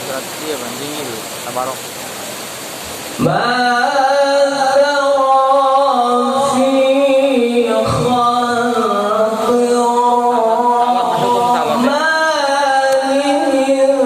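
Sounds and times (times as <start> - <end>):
man chanting melodically: 3.2 - 14.0.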